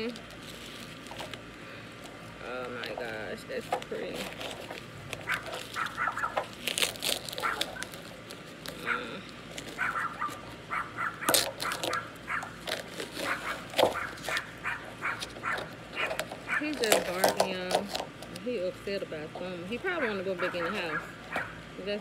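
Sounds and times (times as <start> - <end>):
dog barking: 5.2 - 6.4, 7.4 - 7.9, 8.8 - 9.1, 9.8 - 12.6, 13.2 - 16.7, 20.4 - 21.6.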